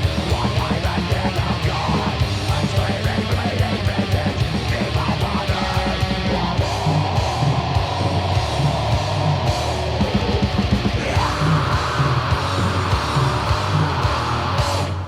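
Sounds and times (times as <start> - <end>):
rock music with distorted guitar: 0.0 - 15.0.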